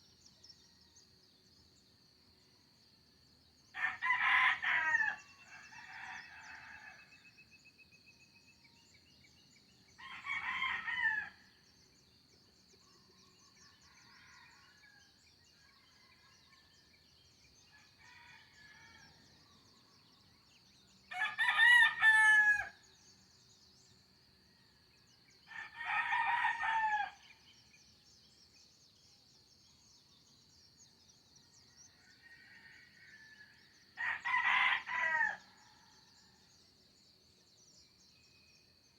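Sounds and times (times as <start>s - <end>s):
rooster crowing: 3.8s - 7.0s, 21.1s - 22.8s, 25.5s - 27.2s, 34.0s - 35.4s.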